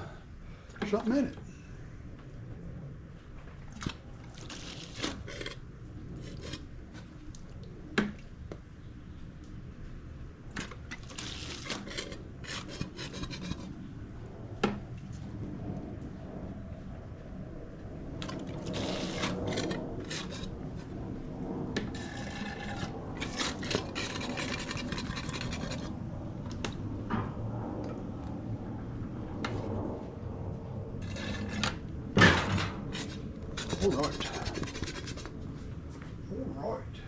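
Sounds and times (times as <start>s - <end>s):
rubbing and scraping: 4.3s - 7.2s, 10.6s - 13.8s, 18.2s - 21.0s, 21.8s - 26.0s, 31.0s - 35.7s.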